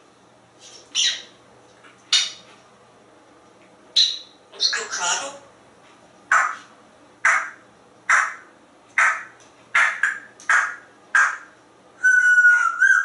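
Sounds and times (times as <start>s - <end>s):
parrot long whistle: 12.0s - 13.0s.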